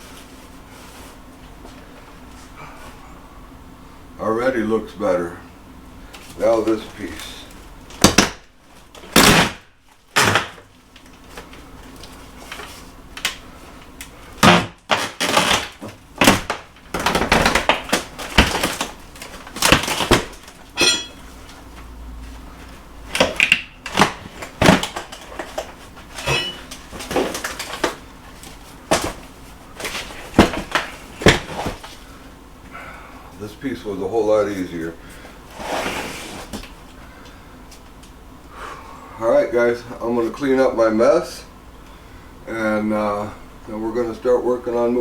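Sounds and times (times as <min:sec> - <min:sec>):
scraping and clattering: 0:24.4 - 0:29.2
knocks and bangs on wood: 0:30.3 - 0:31.8.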